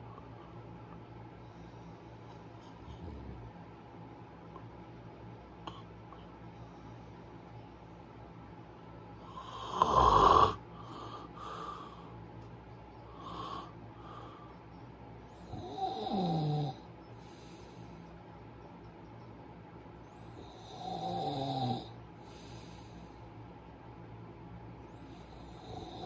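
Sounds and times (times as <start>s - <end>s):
quiet breaths: 0.0s - 26.0s
person snoring: 9.3s - 12.0s, 13.2s - 14.3s, 15.5s - 16.8s, 20.4s - 21.9s, 25.4s - 26.0s.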